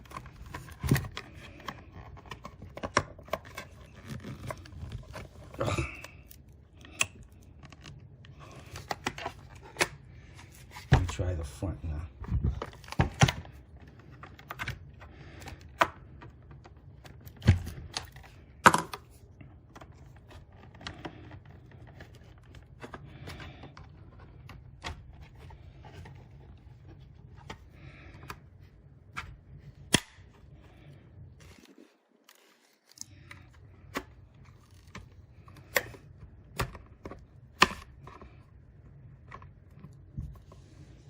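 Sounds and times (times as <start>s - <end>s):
plastic clicks and creaks: 0.0s - 10.0s, 12.3s - 28.5s, 32.3s - 38.5s
sharp plastic snaps: 29.1s - 30.4s.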